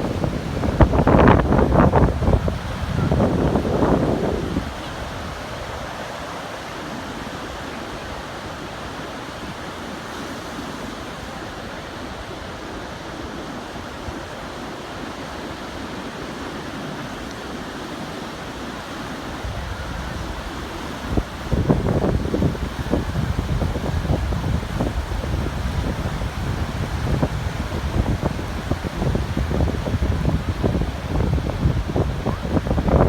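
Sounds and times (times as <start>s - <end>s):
wind buffeting microphone: 0.0s - 6.0s, 19.0s - 33.0s
ocean surf breaking: 0.0s - 33.0s.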